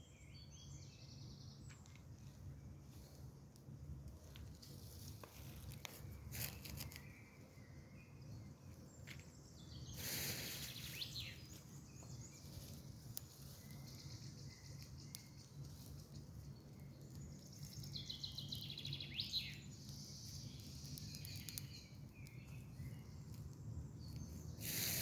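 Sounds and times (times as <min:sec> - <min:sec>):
birds chirping: 0:05.7 - 0:25.0
fire crackling and popping: 0:10.0 - 0:25.0.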